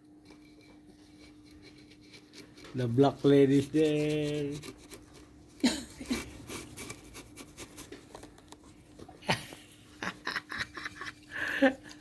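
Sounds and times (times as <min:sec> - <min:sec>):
cats scratching and rubbing: 0:00.0 - 0:09.2.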